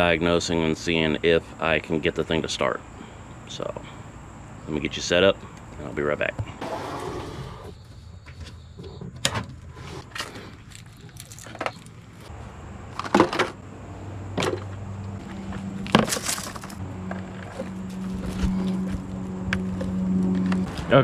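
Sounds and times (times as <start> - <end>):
low hum: 10.4 - 21.0
objects knocking and clattering: 13.0 - 13.6, 15.8 - 17.7.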